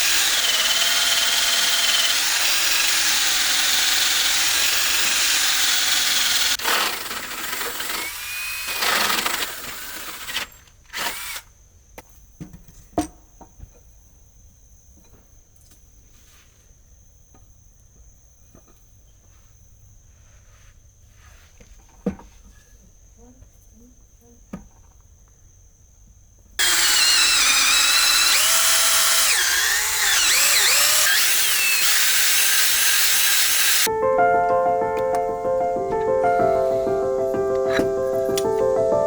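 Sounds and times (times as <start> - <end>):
power tool running: 0.0 - 11.4, 26.6 - 33.9.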